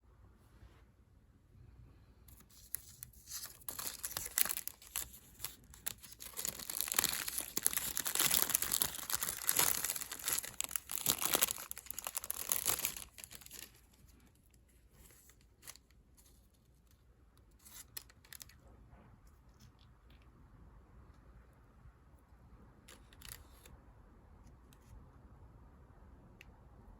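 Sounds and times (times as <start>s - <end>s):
packaging tearing and crinkling: 2.3s - 13.9s.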